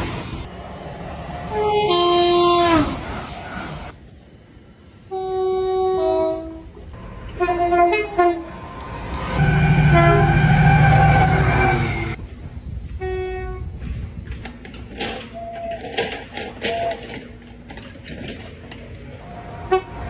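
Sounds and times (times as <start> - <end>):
train rumble: 0.0 - 4.0, 6.8 - 20.0
train horn blasts: 1.4 - 3.2, 5.1 - 12.2, 13.0 - 13.8, 19.2 - 20.0.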